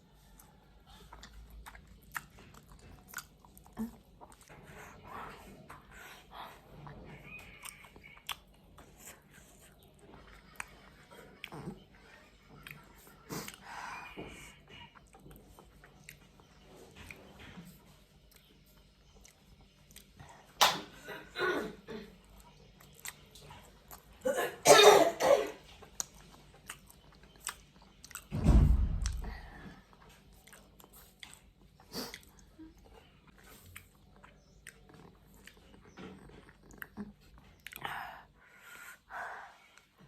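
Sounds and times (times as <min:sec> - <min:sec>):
chewing clicks: 0:00.3 - 0:04.6, 0:07.4 - 0:10.8, 0:18.3 - 0:20.6, 0:22.2 - 0:24.1, 0:25.8 - 0:28.3, 0:30.1 - 0:38.0
woman coughing: 0:20.6 - 0:22.1, 0:24.2 - 0:25.6.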